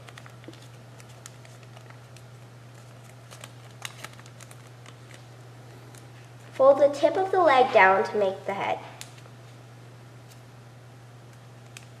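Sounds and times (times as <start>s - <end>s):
paper being folded: 0.0s - 7.0s
paper crackles: 0.0s - 7.0s
steady low hum: 0.0s - 12.0s.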